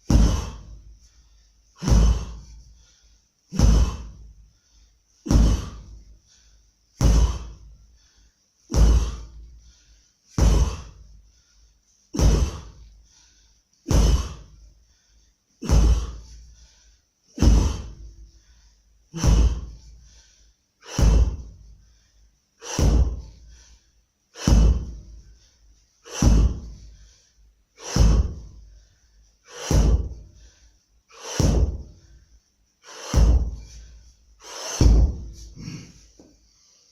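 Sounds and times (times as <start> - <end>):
heavy mace whooshing: 0.0 - 0.8, 1.8 - 2.6, 3.5 - 4.3, 5.3 - 6.1, 7.0 - 7.7, 8.7 - 9.4, 10.4 - 11.0, 12.2 - 12.9, 13.9 - 14.6, 15.6 - 16.4, 17.4 - 18.1, 19.2 - 19.8, 20.9 - 21.7, 22.6 - 23.5, 24.4 - 25.3, 26.1 - 27.0, 27.8 - 28.8, 29.5 - 30.5, 31.1 - 32.2, 32.9 - 36.0.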